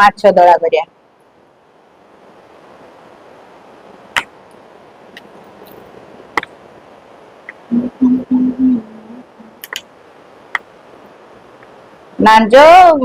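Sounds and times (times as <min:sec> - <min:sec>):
person humming: 0:07.7 - 0:09.6.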